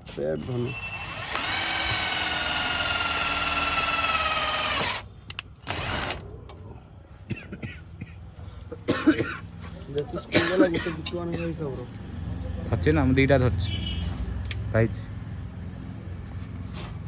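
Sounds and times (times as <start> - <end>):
electric drill whining: 0.4 - 6.2.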